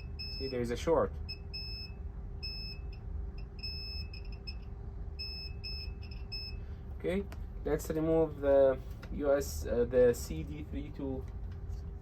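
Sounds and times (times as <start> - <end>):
high-pitched multimeter beep: 0.0 - 6.6
faint steady hum: 0.0 - 12.0.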